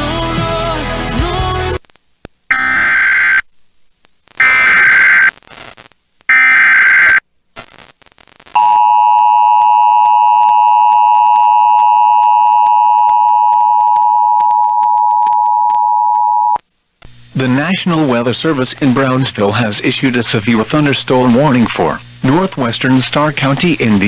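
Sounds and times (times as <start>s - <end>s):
buzzy data bursts: 2.5s - 3.4s, 4.4s - 5.4s, 6.3s - 7.2s.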